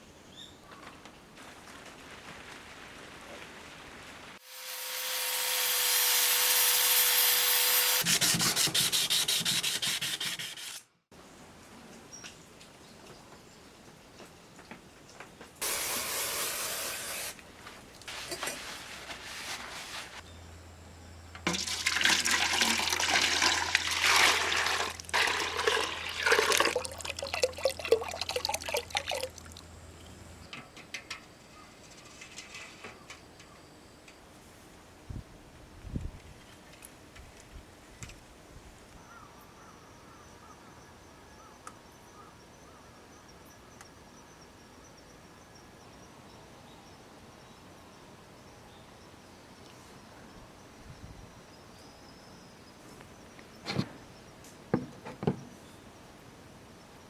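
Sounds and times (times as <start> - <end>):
water running and gurgling: 21.5 - 29.7.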